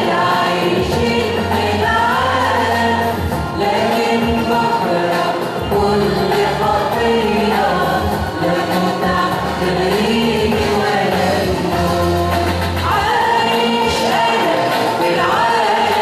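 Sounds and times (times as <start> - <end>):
choir singing a hymn: 0.0 - 16.0.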